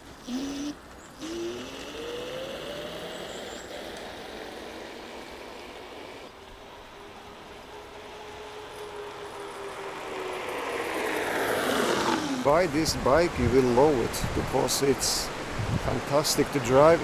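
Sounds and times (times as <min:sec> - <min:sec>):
electric motor whining: 0:00.3 - 0:12.4
wind noise: 0:12.5 - 0:16.2.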